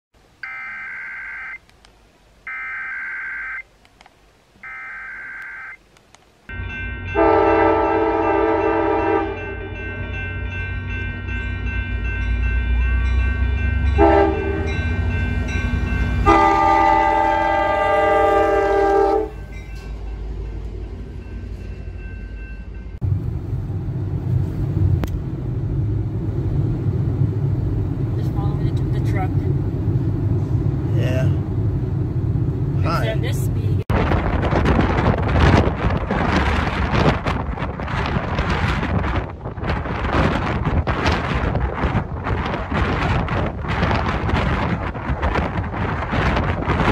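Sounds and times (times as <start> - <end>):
two-pitch digital data tones: 0.4 - 1.6, 2.5 - 3.6, 4.6 - 5.8
vehicle rumble: 9.7 - 46.9.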